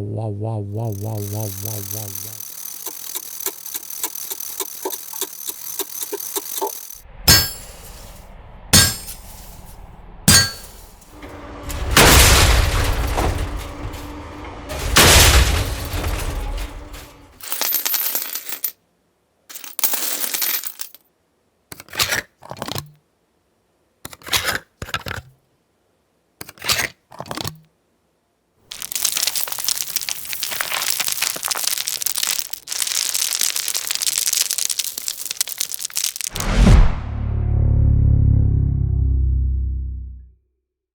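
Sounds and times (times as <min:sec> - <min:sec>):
objects breaking and clinking: 0:00.8 - 0:08.2, 0:08.8 - 0:09.7, 0:10.3 - 0:18.8, 0:19.5 - 0:21.0, 0:28.7 - 0:36.7
sharp hits: 0:00.9 - 0:17.4
dense continuous noise: 0:27.2 - 0:36.4.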